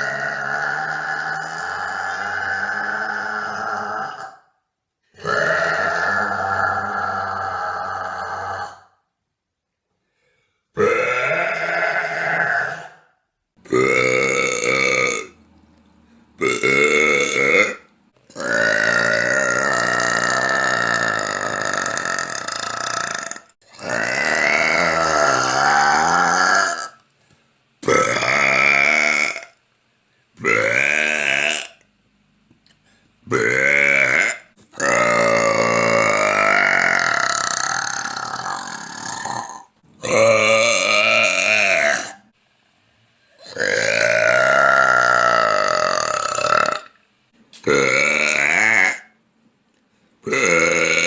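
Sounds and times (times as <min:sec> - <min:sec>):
woman burping loudly: 0:00.0 - 0:04.5, 0:05.2 - 0:09.0, 0:10.8 - 0:15.4, 0:16.4 - 0:27.0, 0:27.8 - 0:29.6, 0:30.4 - 0:31.8, 0:33.3 - 0:42.3, 0:43.4 - 0:47.0, 0:47.6 - 0:49.2, 0:50.2 - 0:51.0.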